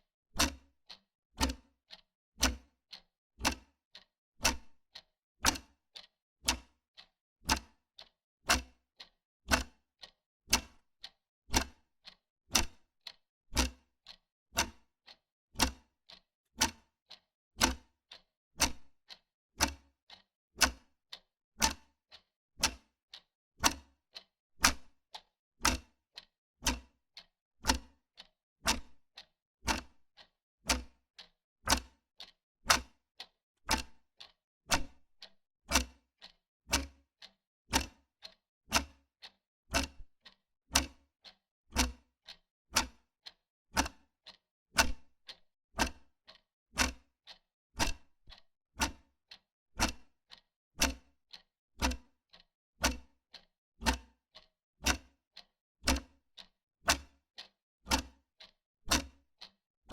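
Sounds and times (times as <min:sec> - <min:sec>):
wall clock ticking: 0:03.4 - 0:03.7, 0:04.4 - 0:04.6, 0:09.5 - 0:10.8, 0:11.5 - 0:12.8, 0:24.6 - 0:24.9, 0:27.6 - 0:30.9, 0:31.7 - 0:32.9, 0:33.7 - 0:36.3, 0:37.2 - 0:44.1, 0:44.8 - 0:49.1, 0:51.8 - 0:58.5.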